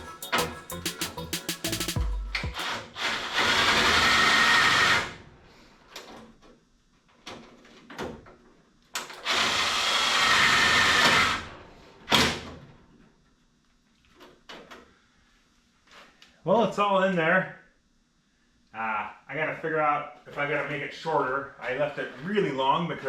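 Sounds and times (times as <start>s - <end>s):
power drill running: 2.5s - 5.2s, 9.2s - 11.5s.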